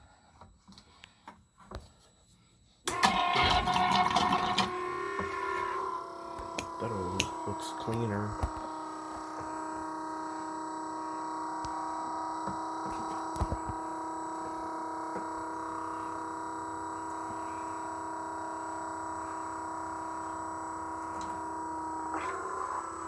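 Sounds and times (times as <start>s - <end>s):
oil pump whining: 2.8s - 23.0s.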